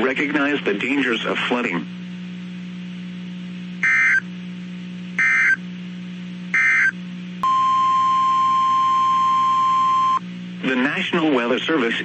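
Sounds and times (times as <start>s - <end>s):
low steady hum: 0.0s - 12.0s
steady alarm tone: 3.8s - 4.3s, 5.2s - 5.6s, 6.5s - 10.2s.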